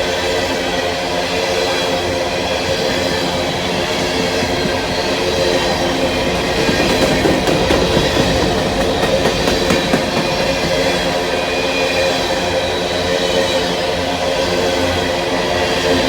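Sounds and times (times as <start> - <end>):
freight train rolling past: 0.0 - 16.0
wheels clacking over rail joints: 2.0 - 13.6.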